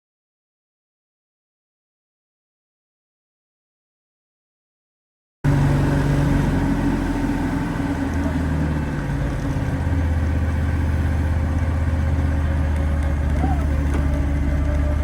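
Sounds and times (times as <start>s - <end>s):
sawmill engine running: 5.5s - 15.0s.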